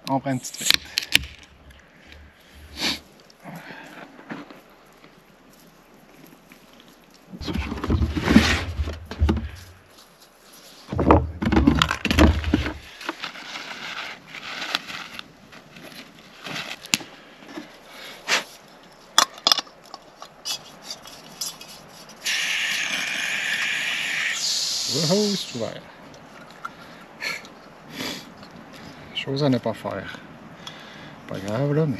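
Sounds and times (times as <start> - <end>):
camping gear knocking and clinking: 7.2 - 10.0, 10.8 - 13.4, 18.7 - 22.2
propane gas hissing: 22.2 - 25.6.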